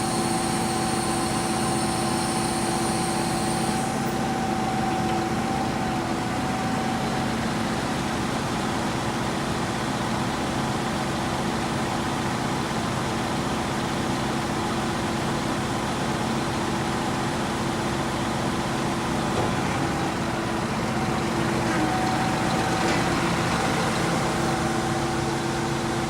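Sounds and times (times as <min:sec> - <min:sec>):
diesel engine humming: 0:02.7 - 0:09.2, 0:17.6 - 0:26.0.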